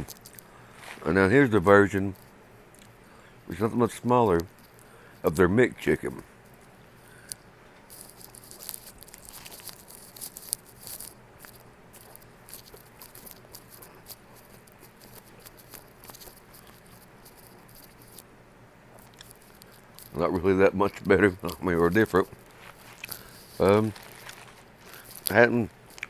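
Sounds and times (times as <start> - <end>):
paper wrapper crackling: 7.9 - 18.2, 19.2 - 26.0.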